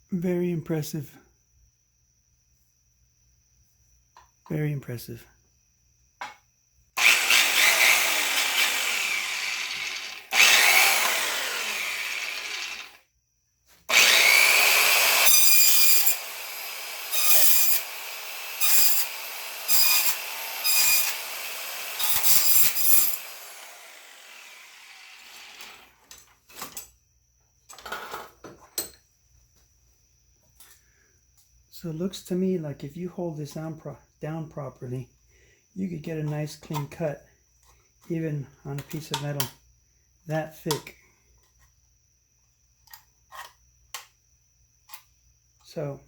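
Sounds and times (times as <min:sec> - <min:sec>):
electric metal shear cutting: 0:07.0 - 0:13.0, 0:13.9 - 0:26.0.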